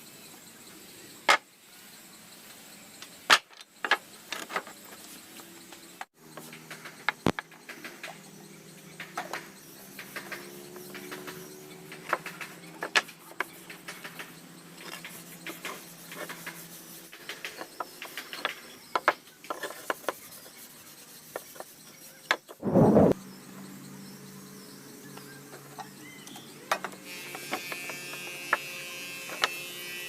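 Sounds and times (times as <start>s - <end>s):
wooden pieces clicking and tapping: 9.0s - 16.6s, 17.2s - 20.2s
steady low hum: 22.6s - 25.1s.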